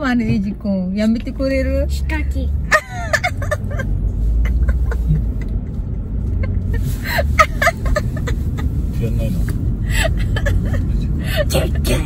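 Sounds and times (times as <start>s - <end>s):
road rumble inside car: 0.0s - 12.0s.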